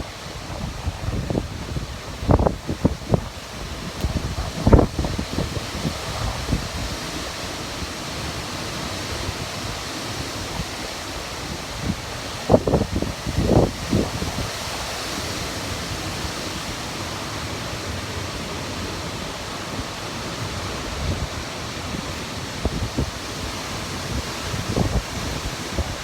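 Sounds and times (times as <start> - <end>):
wind rushing: 0.0 - 7.4
wind buffeting microphone: 0.0 - 26.0.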